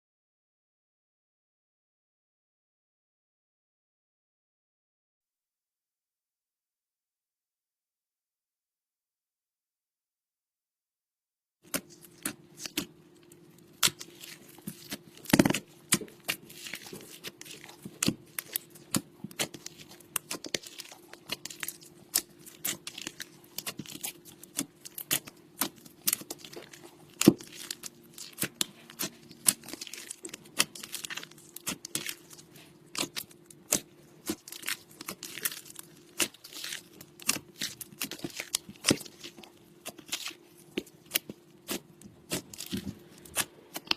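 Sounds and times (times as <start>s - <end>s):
faint steady hum: 11.7s - 43.9s.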